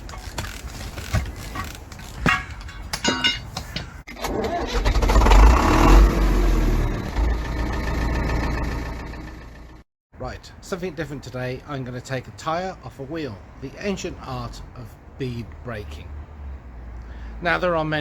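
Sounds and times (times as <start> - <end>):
engine starting and rumbling: 4.1 - 9.9.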